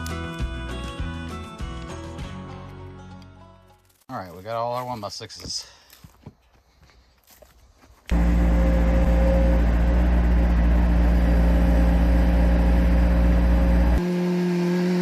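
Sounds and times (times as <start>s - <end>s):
sawmill engine running: 8.1s - 15.0s.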